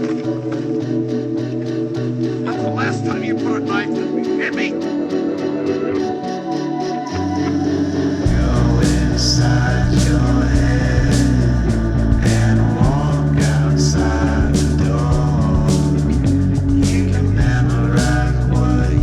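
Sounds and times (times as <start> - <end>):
drums on a steady beat: 8.3 - 19.0.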